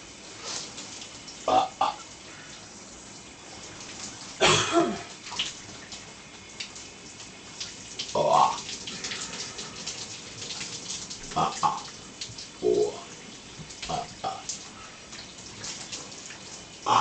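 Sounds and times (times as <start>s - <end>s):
shower running: 0.0s - 17.0s
person burping: 1.5s - 2.0s, 4.4s - 5.1s, 8.2s - 8.6s, 11.3s - 11.9s, 12.6s - 13.0s, 13.9s - 14.5s.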